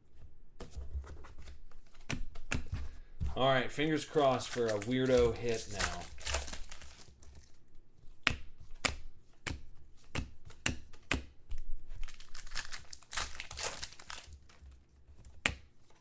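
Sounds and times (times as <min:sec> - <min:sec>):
card pack wrapper crinkling: 0:03.8 - 0:07.5, 0:12.0 - 0:14.6.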